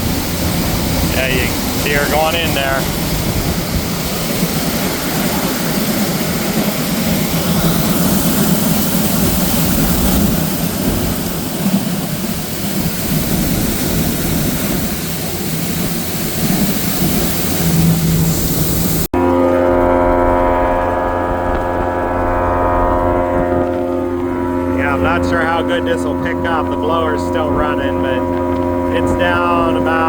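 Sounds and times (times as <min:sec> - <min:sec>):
blower rushing noise: 0:00.0 - 0:19.1.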